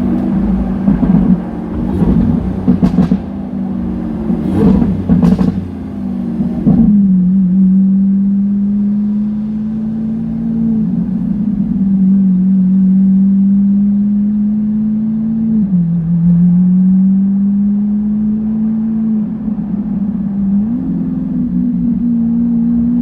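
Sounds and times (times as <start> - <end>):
exhaust crackles: 0.0 - 13.8
car engine droning: 0.0 - 23.0.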